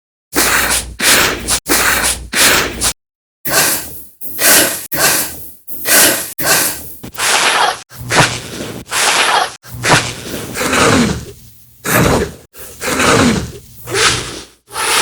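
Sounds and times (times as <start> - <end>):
person breathing hard: 3.5 - 8.1.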